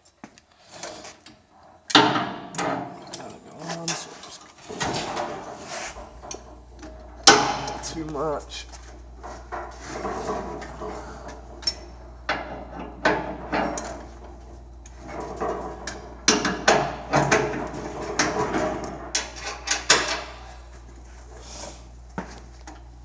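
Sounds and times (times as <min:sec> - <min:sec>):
metal hitch parts clanking: 0:01.8 - 0:08.2, 0:09.2 - 0:20.7.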